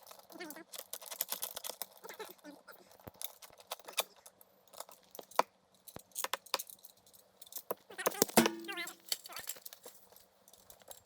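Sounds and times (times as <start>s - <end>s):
light metallic clinks and knocks: 2.9s - 11.0s.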